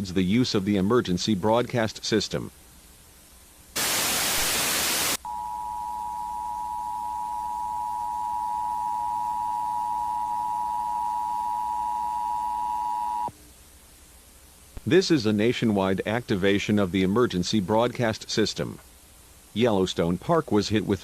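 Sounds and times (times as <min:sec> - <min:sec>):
loud static hiss: 0:00.0 - 0:05.4, 0:06.1 - 0:21.0
two-tone attention signal: 0:05.2 - 0:13.3.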